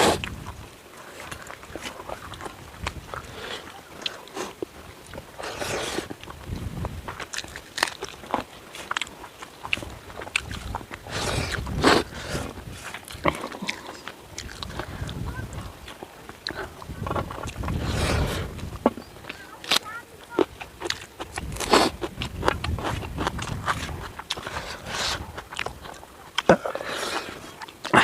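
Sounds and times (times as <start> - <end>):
person biting and chewing: 0.0 - 28.0
wet mouth clicks and smacks: 8.8 - 12.0.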